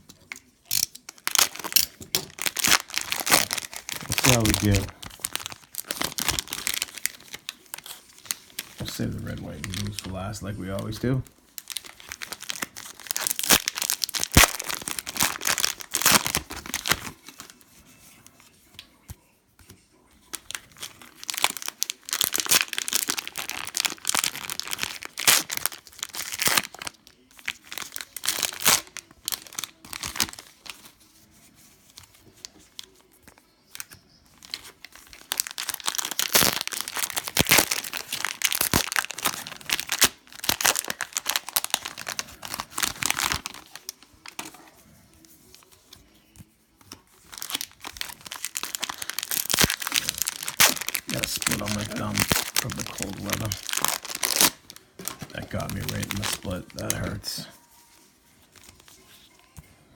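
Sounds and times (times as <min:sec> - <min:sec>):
cellophane wrappers tearing and crinkling: 0:00.2 - 0:17.6, 0:20.3 - 0:44.6, 0:47.0 - 0:57.4.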